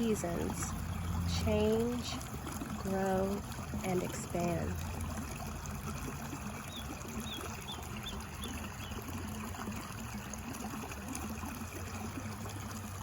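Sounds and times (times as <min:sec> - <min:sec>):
bird chirping: 0:06.7 - 0:09.1.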